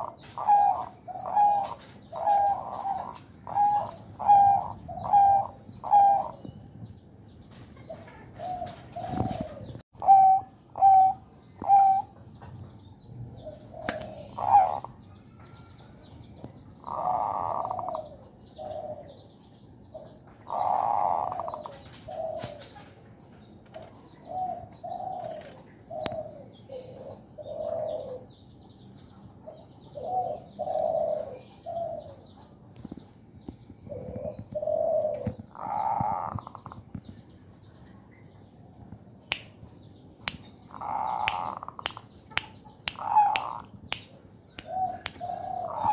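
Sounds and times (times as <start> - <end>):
dove cooing: 0.0 - 6.4, 7.9 - 12.1, 13.4 - 15.0, 16.8 - 19.2, 20.0 - 22.9, 23.8 - 28.4, 29.5 - 32.3, 33.8 - 36.8, 40.7 - 41.8, 43.0 - 43.7, 44.6 - 45.9.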